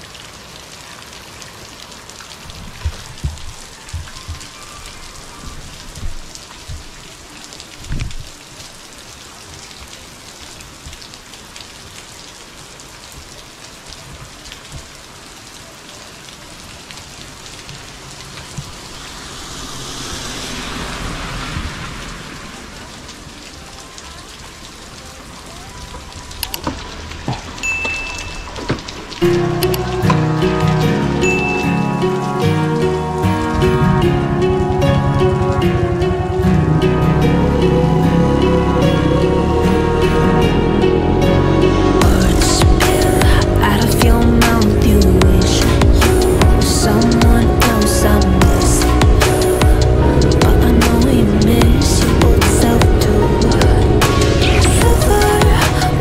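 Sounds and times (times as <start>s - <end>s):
heavy rain falling: 0.0s - 56.0s
hissing rush: 17.9s - 23.8s
sharp low thumps: 42.0s - 47.8s, 48.4s - 55.8s.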